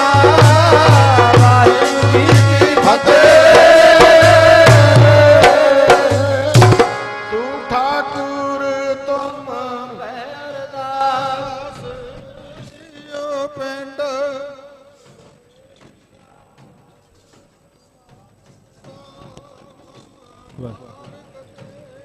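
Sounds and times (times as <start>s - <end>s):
drum strokes: 0.0s - 7.2s
devotional music: 0.0s - 15.1s.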